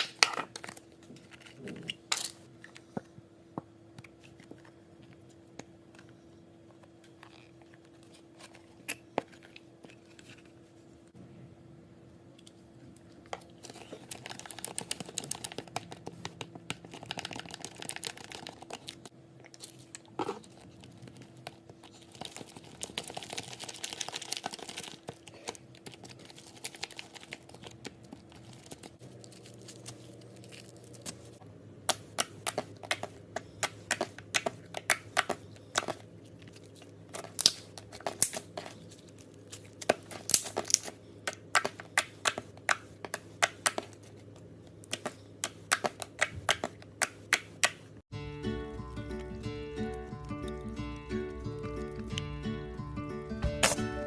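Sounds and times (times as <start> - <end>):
slime squishing and crinkling: 12.8 - 47.8.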